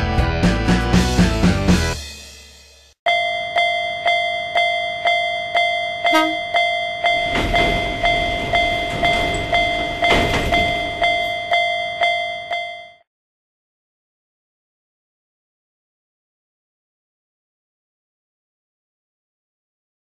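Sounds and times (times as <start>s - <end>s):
level crossing bell clanging: 3.1s - 13.0s
train horn toot: 6.1s - 6.6s.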